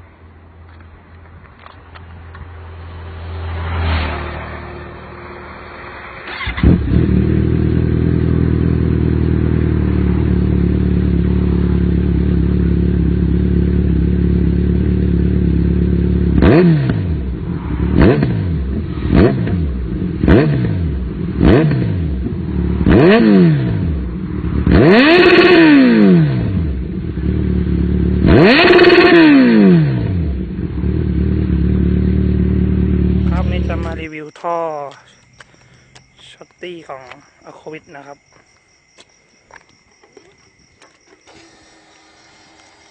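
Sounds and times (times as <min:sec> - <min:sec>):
motorcycle engine revving: 0:02.3 - 0:34.1, 0:40.1 - 0:42.9
motorcycle engine starting: 0:04.8 - 0:34.1, 0:40.0 - 0:42.9
motorcycle engine idling: 0:30.4 - 0:34.1.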